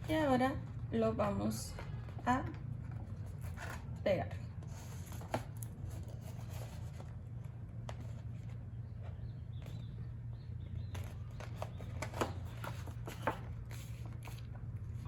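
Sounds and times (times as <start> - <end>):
low steady hum: 0.0 - 15.0
cardstock rustling and tapping: 10.8 - 15.0.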